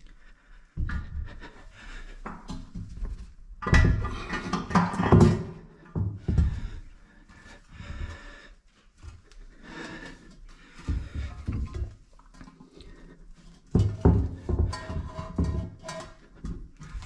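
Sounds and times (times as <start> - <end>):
knocks and scrapes: 13.5 - 17.0.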